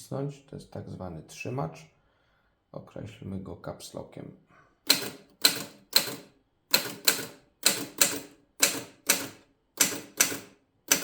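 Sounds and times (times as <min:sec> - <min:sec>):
typewriter keystrokes: 0:04.9 - 0:11.0.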